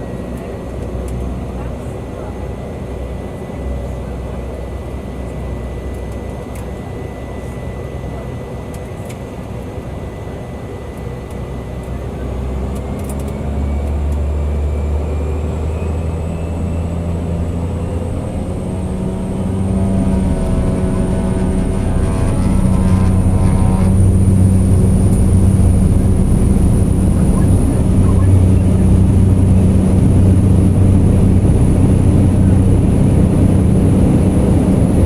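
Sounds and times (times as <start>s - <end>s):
turboprop engine running: 0.0s - 35.0s
high turbine tone rising: 14.8s - 35.0s.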